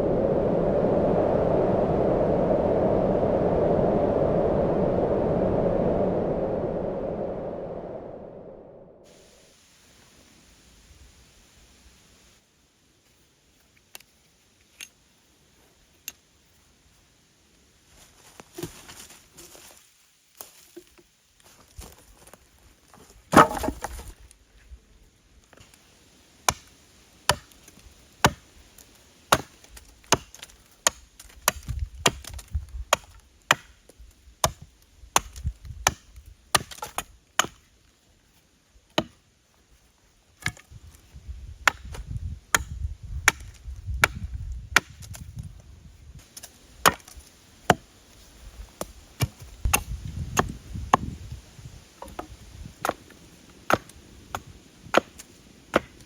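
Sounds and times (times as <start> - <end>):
blade chopping wood: 23.3 - 24.1, 26.5 - 26.7, 27.3 - 27.6, 28.2 - 28.4, 29.3 - 33.8, 34.4 - 37.6, 38.9 - 39.2, 42.6 - 44.2, 44.8 - 45.2, 53.7 - 56.0.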